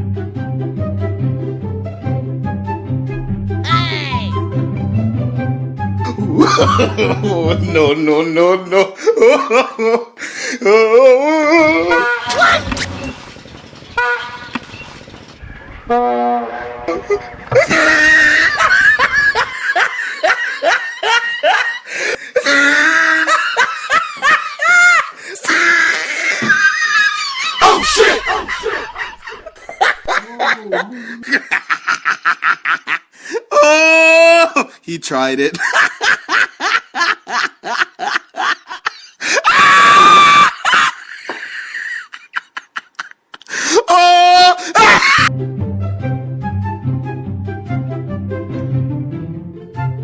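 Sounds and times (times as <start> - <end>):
person laughing hard: 6.0 - 8.0, 8.7 - 12.8, 16.9 - 34.8, 35.6 - 45.3
train horn blast: 11.7 - 13.0, 14.0 - 14.6, 15.9 - 17.5.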